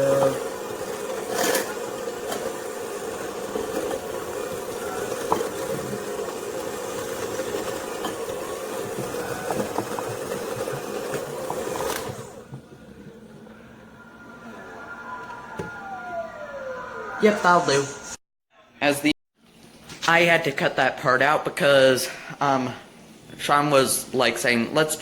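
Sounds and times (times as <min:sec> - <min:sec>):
electric hand mixer running: 0:00.0 - 0:17.8.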